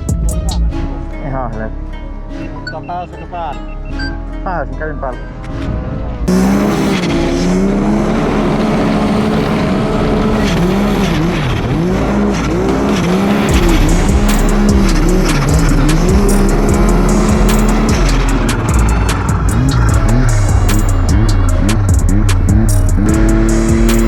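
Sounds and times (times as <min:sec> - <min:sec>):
snowmobile engine revving: 0:06.3 - 0:24.0.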